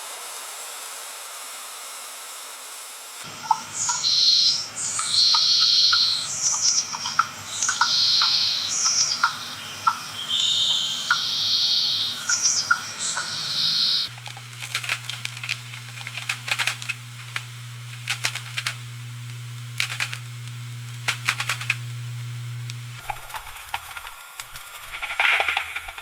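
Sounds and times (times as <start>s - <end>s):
loud high hiss: 14.1s - 23.0s
steady low hum: 14.1s - 23.0s.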